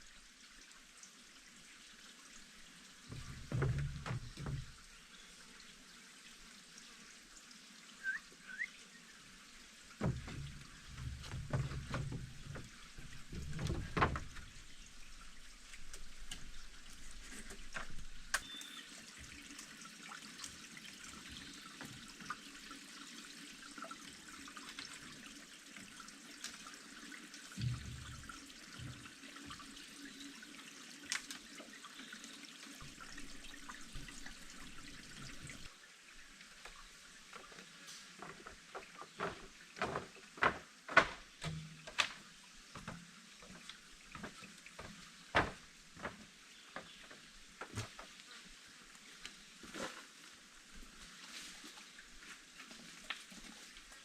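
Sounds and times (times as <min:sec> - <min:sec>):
water running and trickling: 0:00.0 - 0:54.0
sharp irregular knocks and taps: 0:38.7 - 0:42.2.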